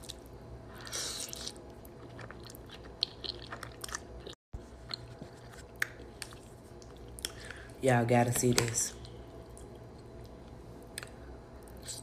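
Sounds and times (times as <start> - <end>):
person chewing food: 0.0 - 7.6.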